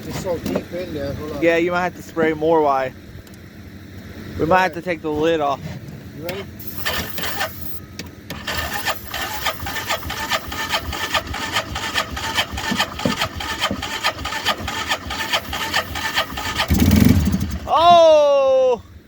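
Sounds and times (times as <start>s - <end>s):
engine cranking on starter: 6.3s - 17.7s.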